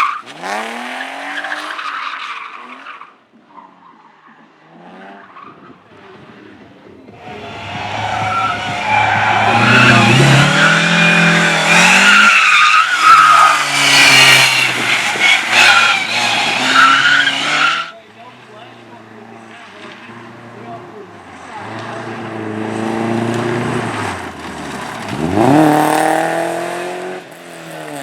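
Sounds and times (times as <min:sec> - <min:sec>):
car engine revving: 0:06.2 - 0:27.9
tyres squealing: 0:07.2 - 0:20.6.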